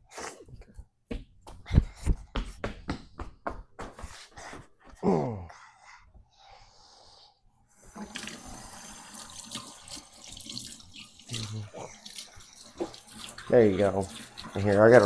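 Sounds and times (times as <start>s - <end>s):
tap water running into sink: 7.9s - 15.0s.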